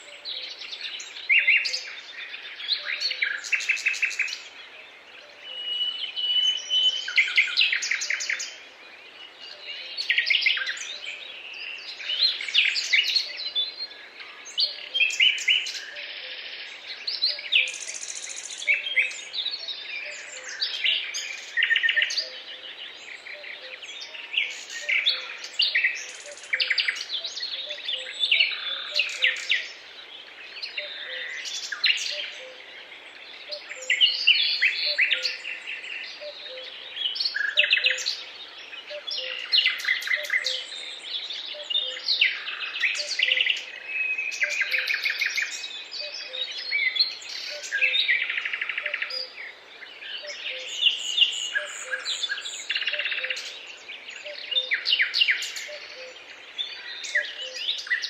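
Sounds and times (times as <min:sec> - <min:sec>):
songbirds singing: 0:00.0 - 0:58.0.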